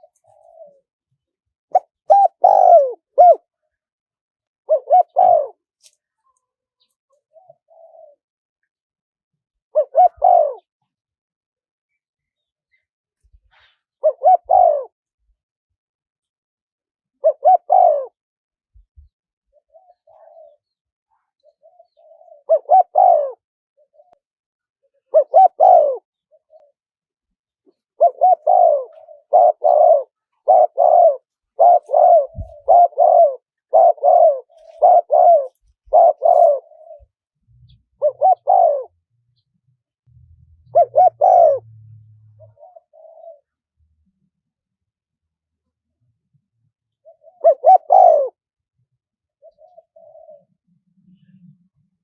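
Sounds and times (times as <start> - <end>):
dove cooing: 0.0 - 0.9, 1.7 - 3.7, 4.6 - 6.0, 6.8 - 8.2, 9.6 - 10.7, 14.0 - 15.0, 17.2 - 18.2, 19.5 - 24.2, 24.8 - 26.8, 27.6 - 39.1, 40.1 - 43.6, 47.0 - 48.4, 49.3 - 51.7.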